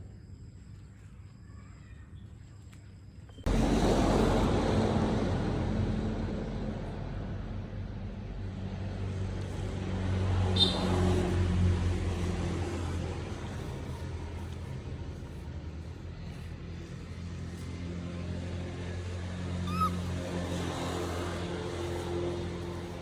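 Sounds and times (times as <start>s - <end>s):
low engine hum: 3.4s - 23.0s
rushing noise: 3.5s - 10.2s
short high squeak: 19.7s - 20.1s.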